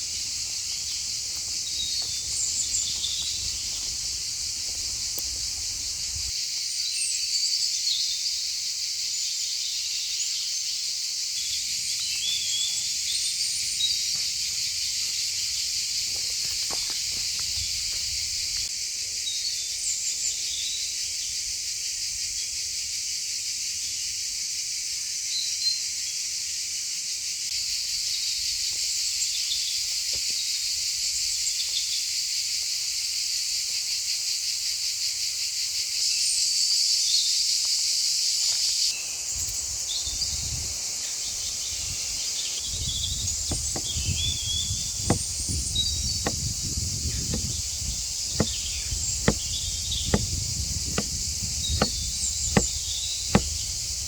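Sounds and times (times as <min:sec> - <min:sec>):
high insect chorus: 0:00.0 - 0:54.0.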